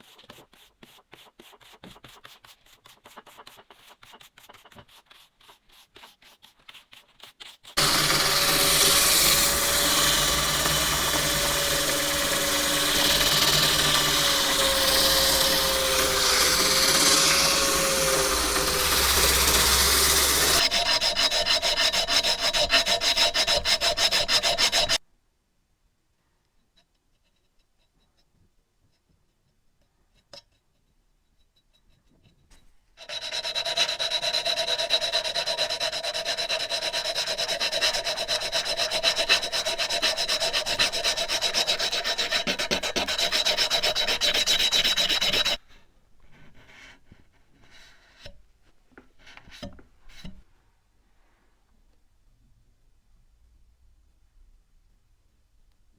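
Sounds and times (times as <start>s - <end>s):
sanding steel chisel: 7.8s - 25.0s, 33.0s - 45.6s.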